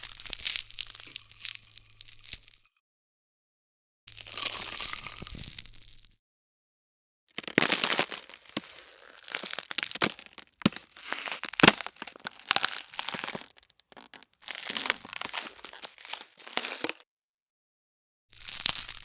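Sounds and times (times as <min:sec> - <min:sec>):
ice crackling: 0:07.3 - 0:17.0, 0:18.4 - 0:19.0
sharp ice cracks: 0:07.3 - 0:17.0, 0:18.4 - 0:19.0.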